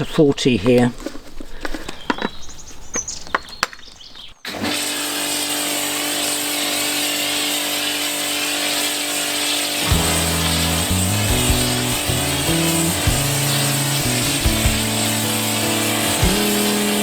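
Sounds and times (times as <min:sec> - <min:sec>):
pressure washer running: 0:04.5 - 0:17.0.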